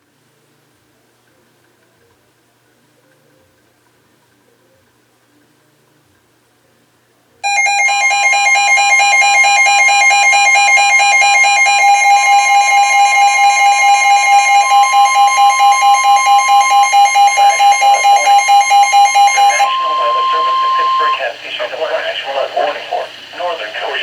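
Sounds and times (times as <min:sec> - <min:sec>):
harsh high alert tones: 0:07.4 - 0:24.0.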